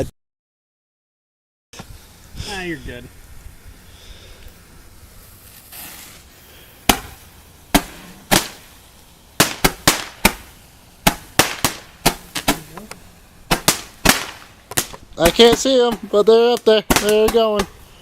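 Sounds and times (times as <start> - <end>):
roman candle pops: 6.9 - 8.6, 9.4 - 17.8.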